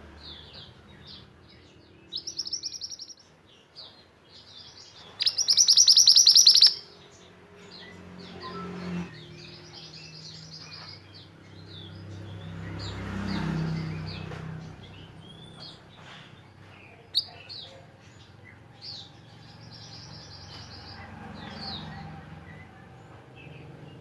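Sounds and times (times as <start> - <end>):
songbirds chirping and whistling: 0.0 - 24.0.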